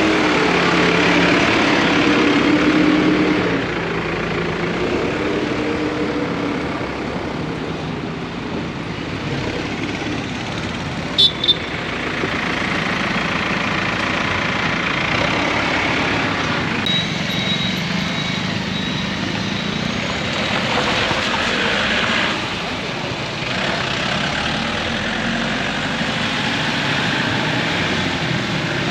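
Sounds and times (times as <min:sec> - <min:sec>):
road noise: 0:00.0 - 0:28.9
heavy vehicle engine running: 0:06.5 - 0:26.4
short high beeps: 0:16.9 - 0:19.9.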